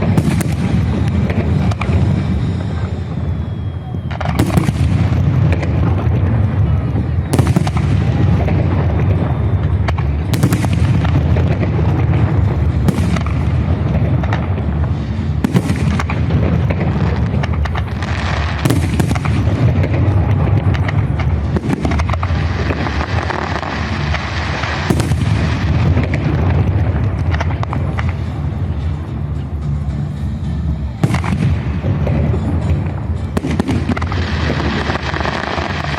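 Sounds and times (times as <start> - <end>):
loud firework shell bursts: 0.0 - 6.4, 7.2 - 28.5
low rumble and crackle: 0.0 - 35.9.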